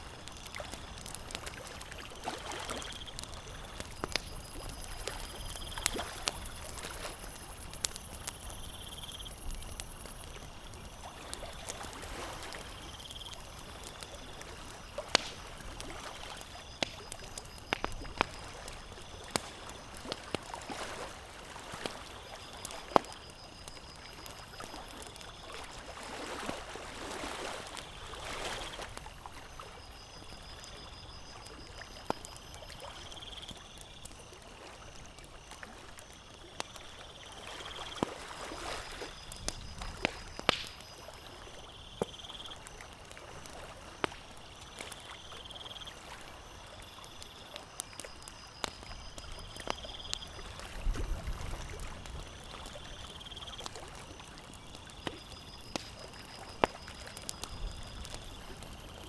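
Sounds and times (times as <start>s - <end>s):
waves lapping at shore: 0.0s - 29.6s, 35.5s - 47.6s
campfire crackling and popping: 0.0s - 59.0s.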